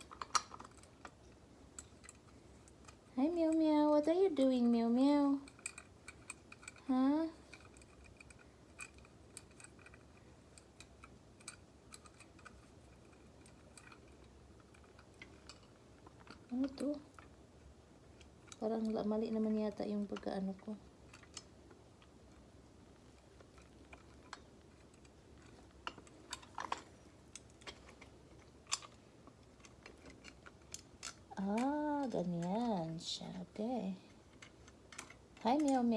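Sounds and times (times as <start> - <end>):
grain grinder parts clicking: 23.0 - 33.0.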